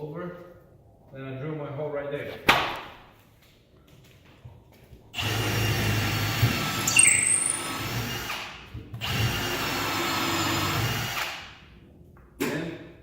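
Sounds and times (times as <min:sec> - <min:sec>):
power drill boring into wood: 0:05.2 - 0:11.4.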